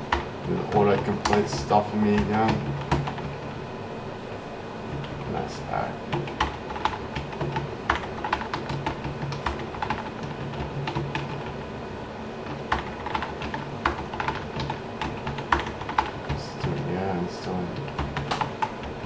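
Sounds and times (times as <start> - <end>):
keyboard typing: 0.0 - 3.4, 6.1 - 11.6, 12.4 - 16.9, 17.7 - 19.0.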